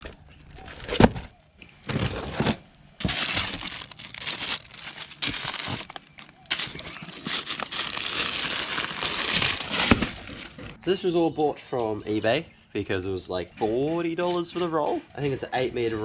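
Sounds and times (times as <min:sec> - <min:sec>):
sound deadening material crinkling: 0:03.0 - 0:10.8.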